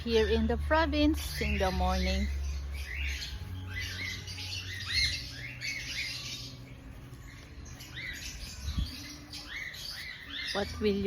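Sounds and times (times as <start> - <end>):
bird chirping: 0.0 - 11.0.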